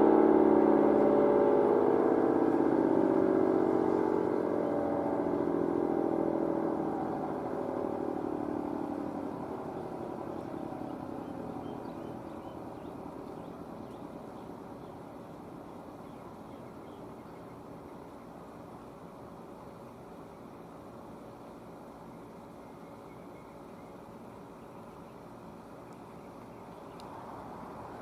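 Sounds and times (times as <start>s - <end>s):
tornado siren winding down: 0.0s - 12.7s.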